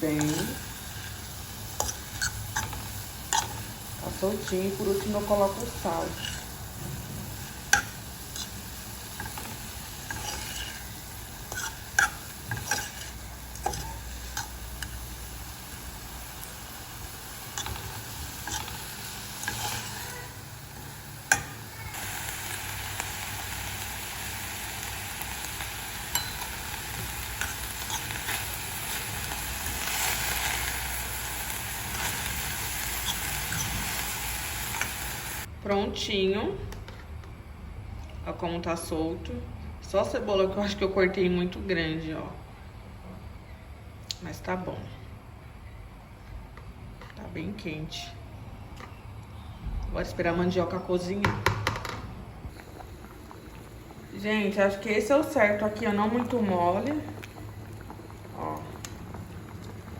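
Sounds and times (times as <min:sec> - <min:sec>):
meat sizzling in a pan: 0:00.0 - 0:35.5.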